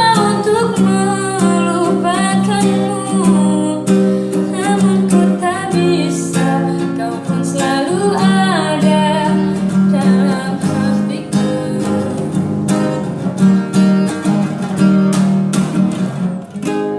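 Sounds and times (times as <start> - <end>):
person singing: 0.0 - 12.8
acoustic guitar strumming: 0.0 - 16.9.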